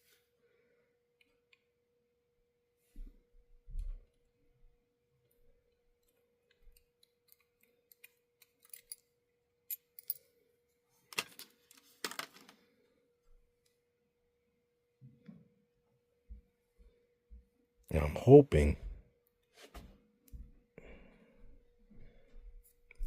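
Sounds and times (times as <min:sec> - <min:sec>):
faint steady hum: 0:00.0 - 0:23.0
metal parts clicking and tapping: 0:06.0 - 0:09.1.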